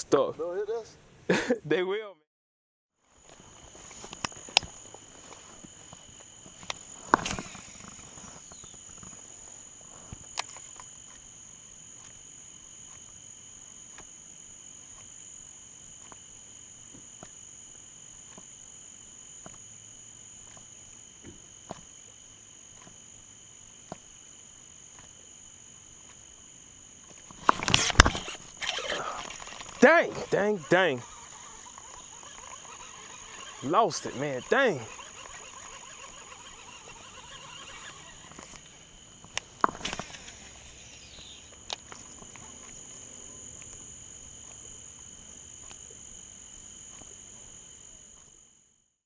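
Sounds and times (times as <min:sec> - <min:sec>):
insects trilling: 0:03.0 - 0:48.7
sharp clicks: 0:27.4 - 0:42.1.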